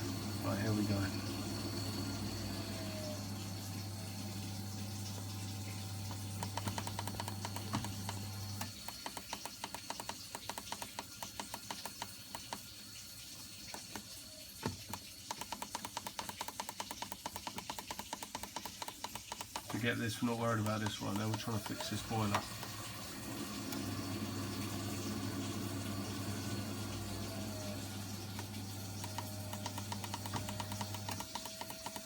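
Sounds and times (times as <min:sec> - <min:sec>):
rapid boiler control clicking: 0:05.7 - 0:12.7, 0:13.7 - 0:32.0.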